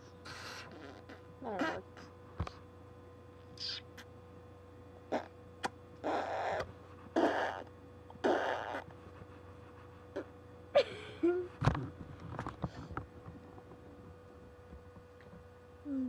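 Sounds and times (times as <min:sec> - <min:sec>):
squeaky vocal sound: 0:00.3 - 0:02.0, 0:03.6 - 0:04.0, 0:05.1 - 0:05.3, 0:06.0 - 0:08.9
breathy blowing mouth noises: 0:06.0 - 0:08.9.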